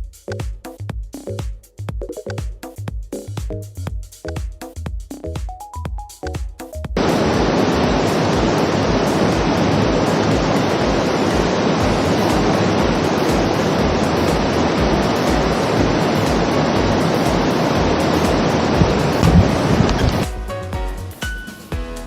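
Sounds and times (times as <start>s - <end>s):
background music beat: 0.0s - 22.0s
waterfall rushing: 7.0s - 20.3s.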